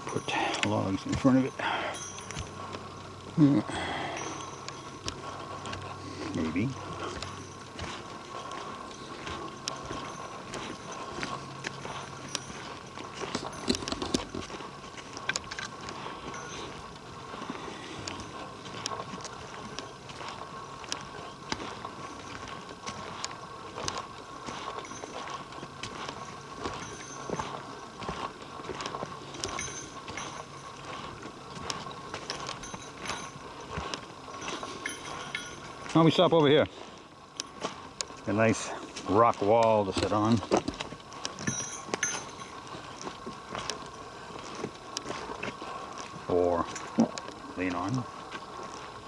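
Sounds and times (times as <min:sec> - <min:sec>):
footsteps on forest floor: 0:00.0 - 0:49.0.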